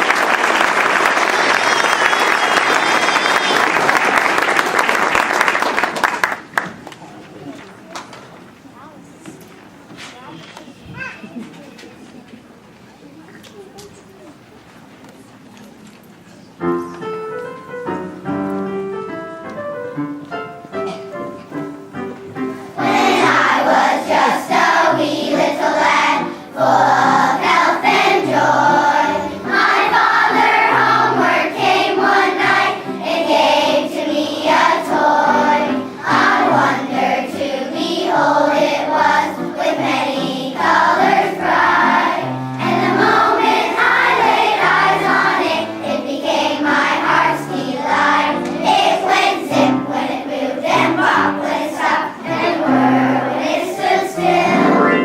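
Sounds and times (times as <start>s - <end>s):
children's choir singing: 0.0s - 6.3s, 21.5s - 55.0s
low musical accompaniment: 16.6s - 55.0s.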